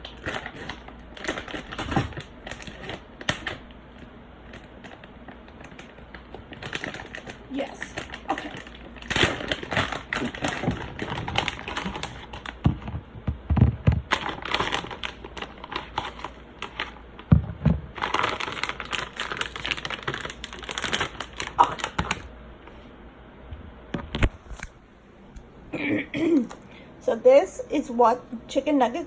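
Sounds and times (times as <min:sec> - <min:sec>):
plastic packaging crinkling: 0:00.0 - 0:22.3.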